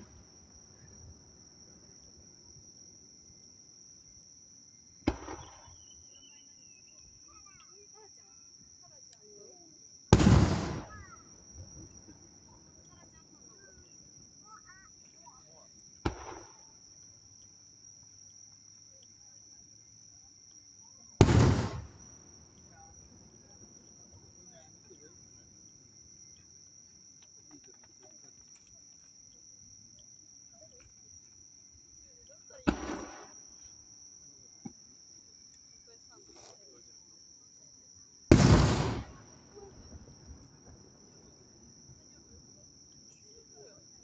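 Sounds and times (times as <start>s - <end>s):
insects chirring: 0.0s - 44.0s
firework bang: 5.1s - 5.8s, 10.1s - 11.2s, 16.1s - 16.7s, 21.2s - 22.2s, 32.7s - 33.4s, 38.3s - 40.1s.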